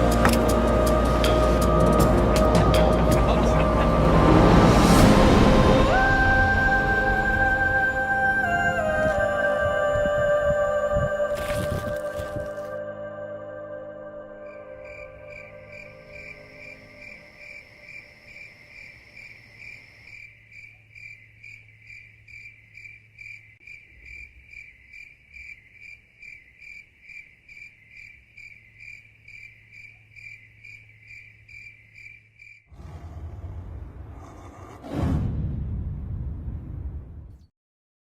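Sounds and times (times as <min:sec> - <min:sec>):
cricket chirping: 0:14.3 - 0:32.7.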